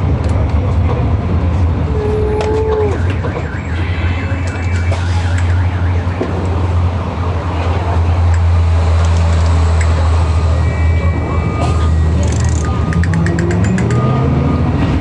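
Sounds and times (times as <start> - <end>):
bus engine drone: 0.0 - 15.0
road and rattle noise: 0.0 - 15.0
high warbling siren-like tone: 2.0 - 6.8.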